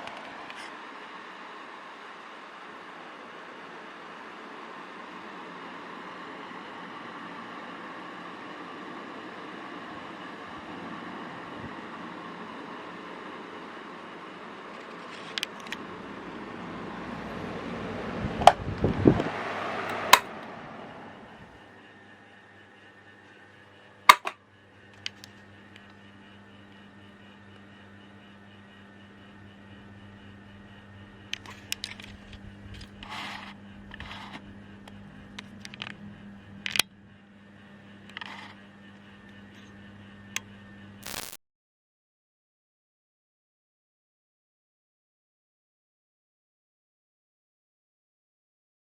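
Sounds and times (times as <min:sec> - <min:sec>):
electric fan motor humming: 0:00.0 - 0:41.4
handling clicks and scrapes: 0:14.7 - 0:15.8, 0:24.1 - 0:24.3, 0:31.4 - 0:34.4, 0:41.0 - 0:41.4
table fan whooshing: 0:15.2 - 0:21.6
sharp click: 0:41.0 - 0:41.4.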